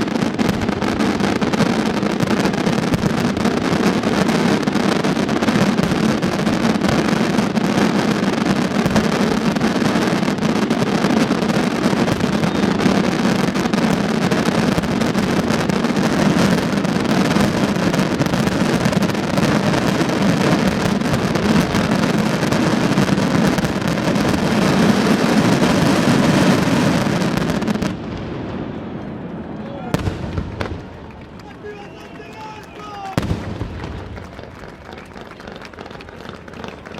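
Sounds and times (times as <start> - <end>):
fireworks bursting and crackling: 0.0 - 36.9.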